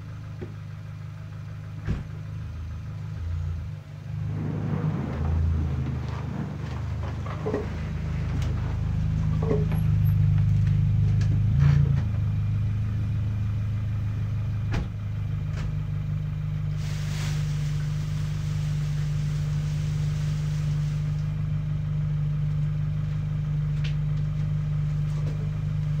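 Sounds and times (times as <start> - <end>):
soft hiss: 16.8 - 21.3.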